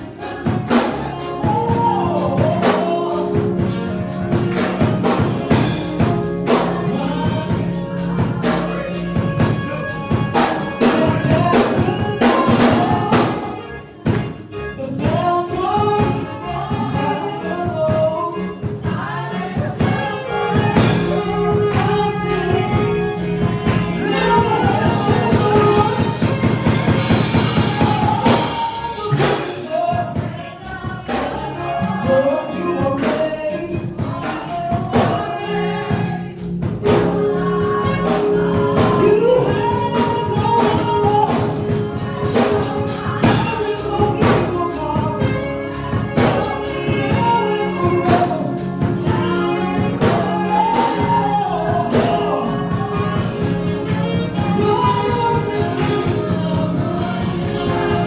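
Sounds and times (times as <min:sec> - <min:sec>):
gospel music with singing: 0:00.0 - 0:58.0.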